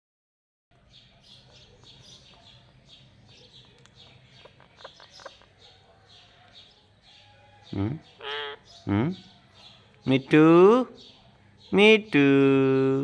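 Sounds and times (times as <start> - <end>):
parakeet chirping: 1.0 - 10.0
soft clicks: 3.6 - 4.2.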